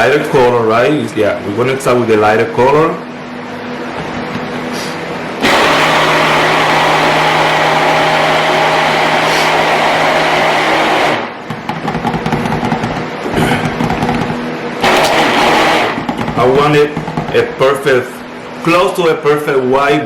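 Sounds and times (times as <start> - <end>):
stick blender running: 4.0 - 18.6.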